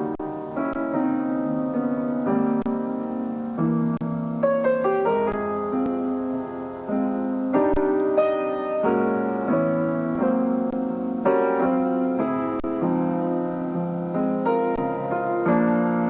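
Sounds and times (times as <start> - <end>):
piano playing slow jazz ballad: 0.0 - 16.0.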